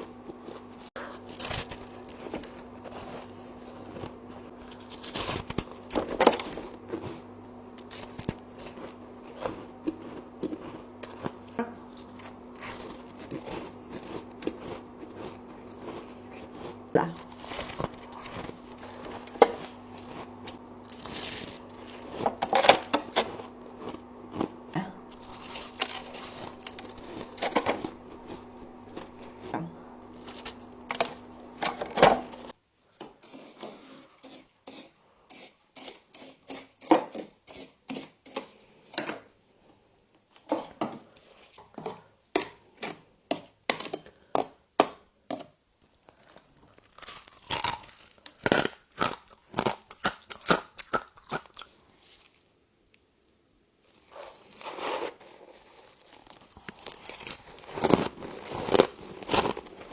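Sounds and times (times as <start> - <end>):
frost being scraped: 0.0 - 32.5, 33.2 - 38.4, 54.0 - 59.9
crunching frost being chewed: 0.0 - 32.6, 45.9 - 52.5, 53.9 - 59.9
steady hum: 0.0 - 32.6.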